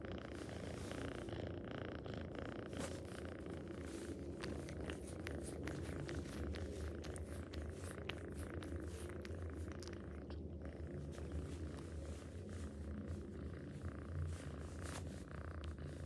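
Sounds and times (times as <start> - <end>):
cat purring: 0.0 - 16.0.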